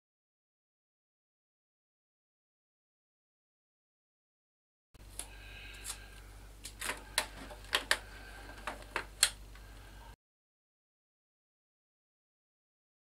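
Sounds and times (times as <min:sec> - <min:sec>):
plastic sheet clicking and snapping: 0:06.6 - 0:09.4.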